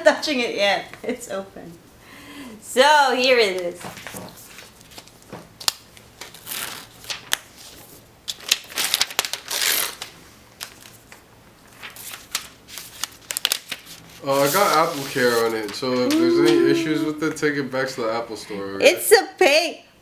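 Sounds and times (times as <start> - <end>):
paper and cardboard rustling: 3.8 - 17.1.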